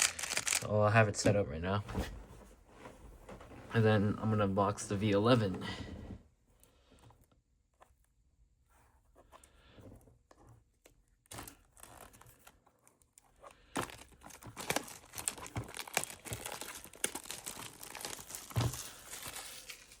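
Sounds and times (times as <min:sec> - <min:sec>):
packaging crackling and tearing: 0:00.0 - 0:00.7, 0:11.3 - 0:20.0.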